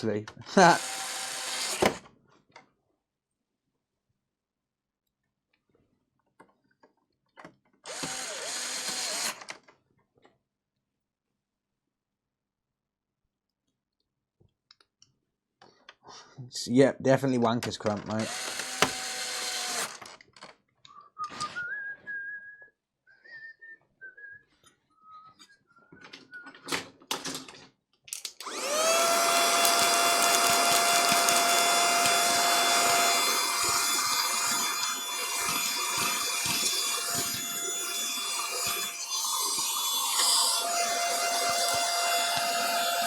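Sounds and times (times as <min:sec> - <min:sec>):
hot-air blower whine and rush: 0:28.4 - 0:43.0.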